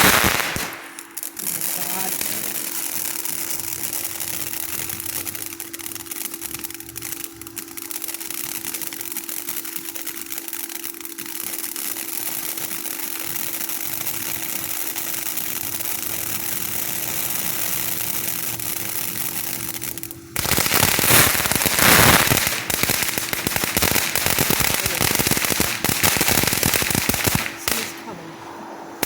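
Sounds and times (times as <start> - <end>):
firework fountain hissing and crackling: 0.0 - 29.0
loud burst of dense crackling: 0.0 - 29.0.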